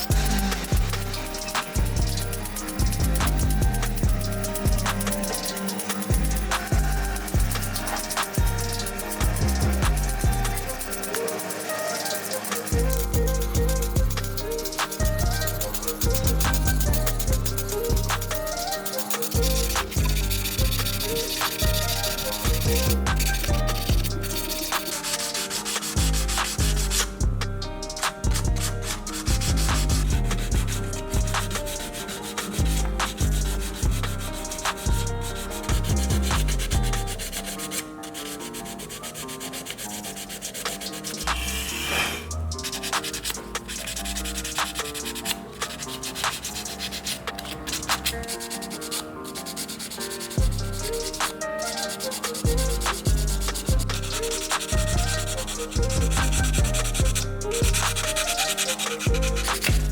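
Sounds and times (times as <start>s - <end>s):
hand sanding rubbing strokes: 0.0s - 59.9s
heavy low thumps: 26.0s - 31.6s.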